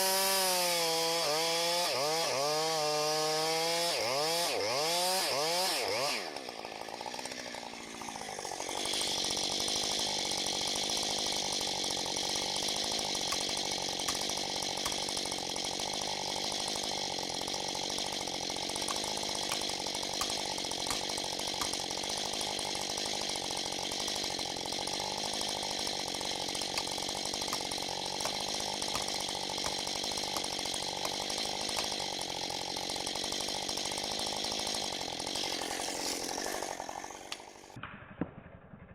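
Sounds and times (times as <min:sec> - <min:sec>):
chainsaw revving: 0:00.0 - 0:37.8.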